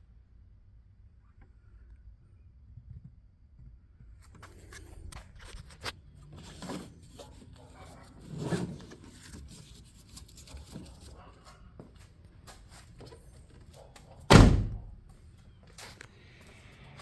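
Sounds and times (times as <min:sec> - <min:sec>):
rustling and scraping: 0:04.2 - 0:16.1.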